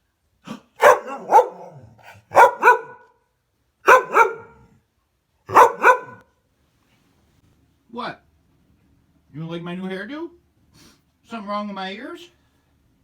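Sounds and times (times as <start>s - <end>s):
dog barking loudly: 0.5s - 3.1s, 3.8s - 4.7s, 5.5s - 6.3s.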